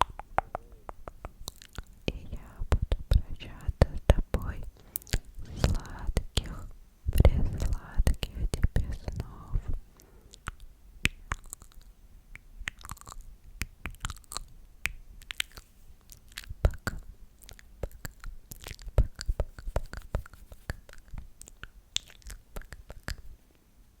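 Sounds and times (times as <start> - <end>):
wet mouth clicks and smacks: 0.0 - 3.9, 4.5 - 6.6, 10.3 - 23.3.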